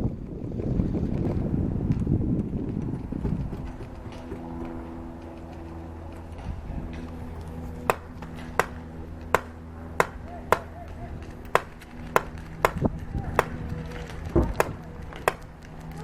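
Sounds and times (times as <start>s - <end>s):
low mechanical hum: 0.0s - 16.0s
airsoft gun shots: 7.8s - 13.6s.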